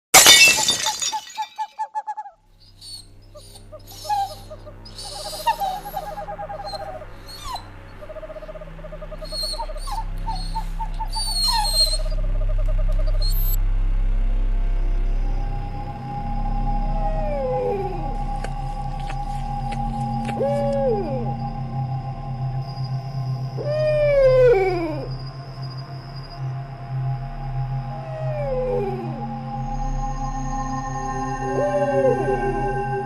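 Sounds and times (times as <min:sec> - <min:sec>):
pulsing animal-like calls: 0:02.2 - 0:13.6, 0:16.1 - 0:22.0
low drone: 0:02.5 - 0:33.0.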